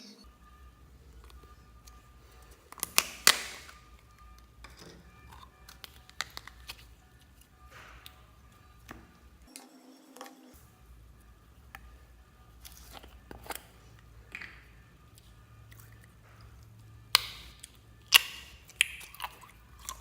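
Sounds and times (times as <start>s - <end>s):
slime pops and crackles: 2.8s - 3.8s, 17.1s - 20.0s
slime clicks and squelches: 17.1s - 20.0s.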